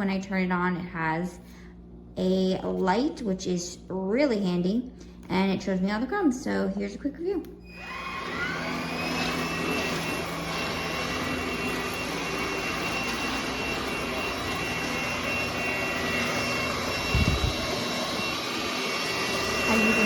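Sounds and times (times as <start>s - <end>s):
stick vacuum motor whine: 7.5s - 20.0s.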